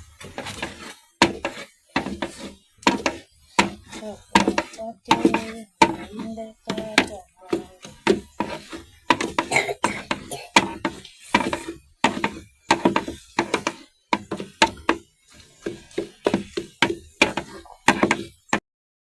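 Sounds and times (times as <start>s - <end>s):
knocking beat: 1.2s - 18.6s
person singing: 4.0s - 7.9s.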